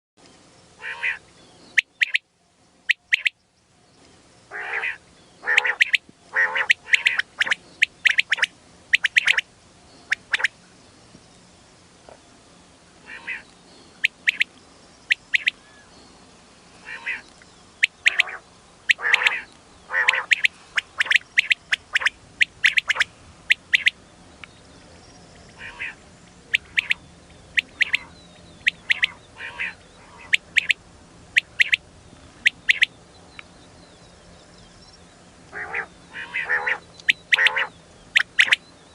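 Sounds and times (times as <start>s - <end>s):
quail calling: 0.8s - 1.2s, 1.8s - 2.2s, 2.9s - 3.4s, 4.5s - 9.4s, 10.1s - 10.5s, 13.1s - 13.4s, 14.0s - 14.5s, 15.1s - 15.6s, 16.8s - 24.0s, 25.6s - 30.8s, 31.4s - 31.8s, 32.4s - 32.9s, 35.5s - 38.6s.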